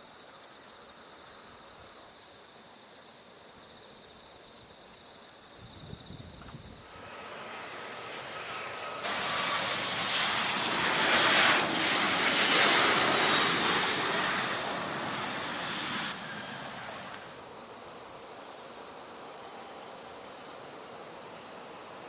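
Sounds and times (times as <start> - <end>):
high jet whine: 6.6 - 18.9
jet airliner passing: 6.6 - 22.0.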